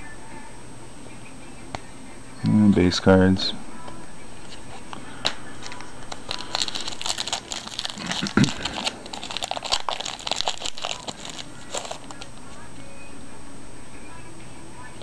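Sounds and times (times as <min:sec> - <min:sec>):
cards handled: 0:04.4 - 0:12.4
wrapper crinkling and tearing: 0:05.2 - 0:12.3.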